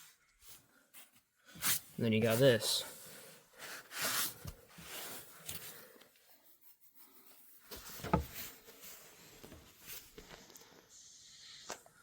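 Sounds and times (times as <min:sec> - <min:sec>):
faint rustling and small clicks: 0:04.4 - 0:11.0.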